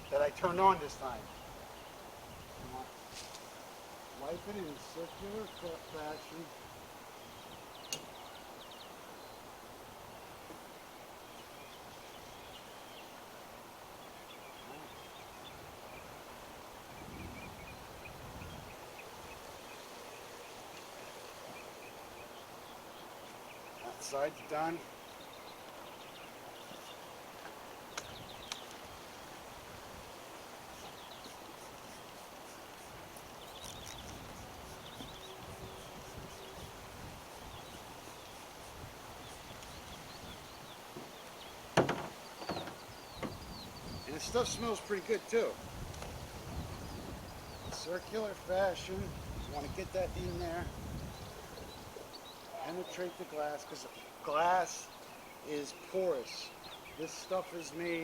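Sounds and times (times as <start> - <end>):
wind noise on microphone: 0.0 - 3.3, 16.8 - 19.5, 28.0 - 30.2, 32.9 - 40.9, 41.6 - 44.8, 45.6 - 52.2
small birds chirping: 0.0 - 58.0.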